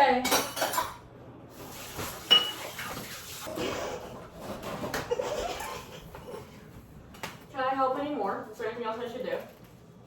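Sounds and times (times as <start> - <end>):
dish clink: 2.3 - 2.7.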